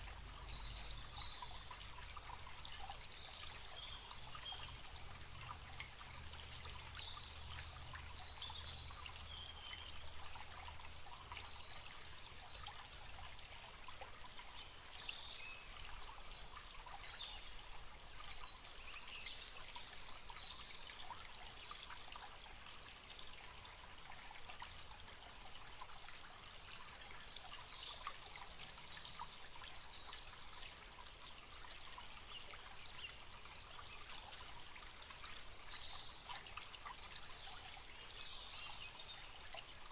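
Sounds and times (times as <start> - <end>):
small birds chirping: 0.0 - 22.4, 26.3 - 39.9
stream trickling: 0.0 - 39.9.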